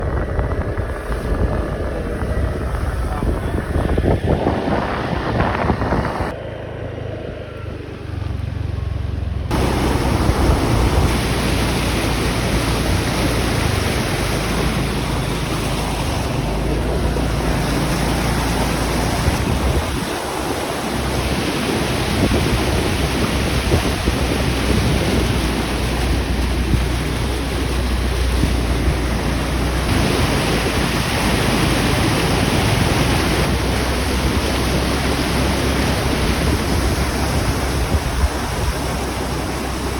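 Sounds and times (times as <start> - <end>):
wind buffeting microphone: 0.0 - 6.4, 9.5 - 39.9
rushing flowing water: 9.5 - 39.9.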